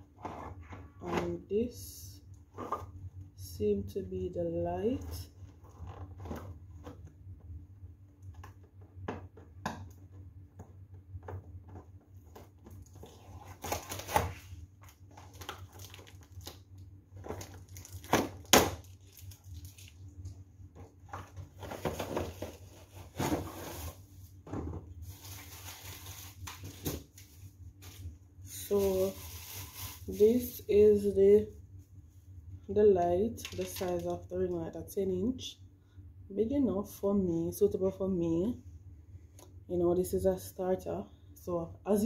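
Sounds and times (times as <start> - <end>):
packaging rustling and crinkling: 11.7 - 16.6, 17.2 - 20.1, 20.8 - 24.1, 25.0 - 30.5.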